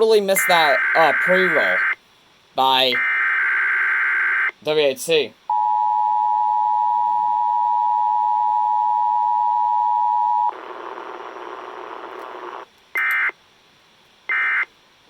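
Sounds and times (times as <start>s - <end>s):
radio hiss: 0.0s - 5.3s, 10.5s - 12.7s
data tone bursts: 0.3s - 2.0s.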